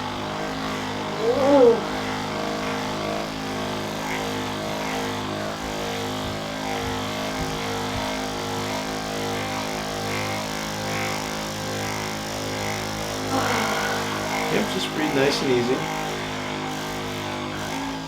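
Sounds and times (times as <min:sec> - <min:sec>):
electric massager motor hum: 0:00.0 - 0:18.0.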